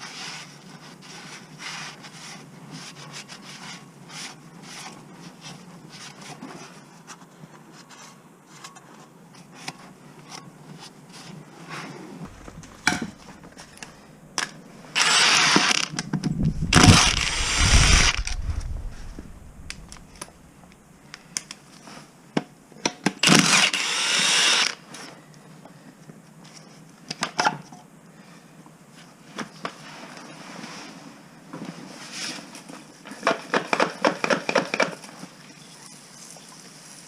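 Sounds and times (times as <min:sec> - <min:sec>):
heavy low knock and rumble: 0:12.3 - 0:13.8, 0:16.2 - 0:20.8
cordless power tool running: 0:14.9 - 0:20.4, 0:23.2 - 0:24.8.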